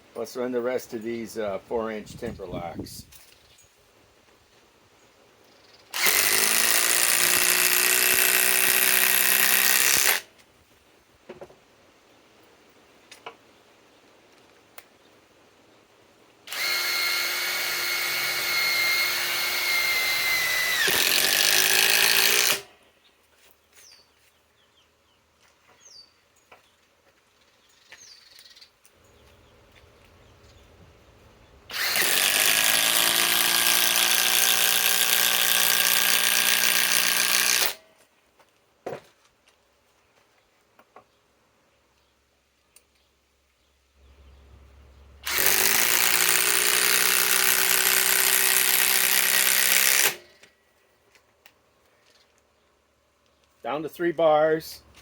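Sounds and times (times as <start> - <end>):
impact driver driving screws into wood: 6.0 - 10.3, 16.5 - 22.7, 31.7 - 37.8, 45.2 - 50.4.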